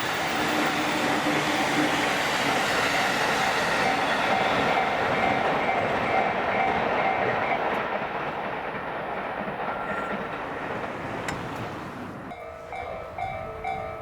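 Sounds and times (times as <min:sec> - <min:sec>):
train wheels rumbling on rails: 0:00.0 - 0:14.0
crossing warning bell tone: 0:03.2 - 0:07.8, 0:12.3 - 0:14.0.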